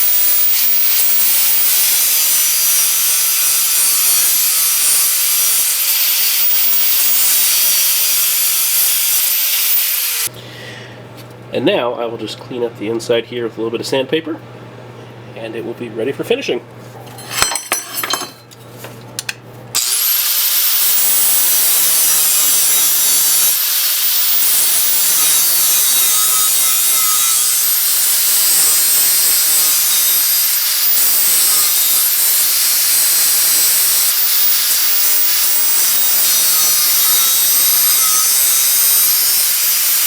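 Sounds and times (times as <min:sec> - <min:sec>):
high-speed power tool whining: 0:00.0 - 0:10.3, 0:19.8 - 0:40.0.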